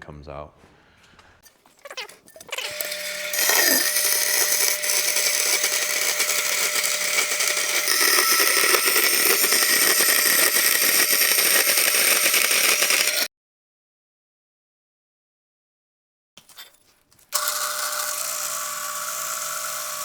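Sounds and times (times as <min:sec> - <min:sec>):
power tool running: 0:02.0 - 0:13.3, 0:17.3 - 0:20.0.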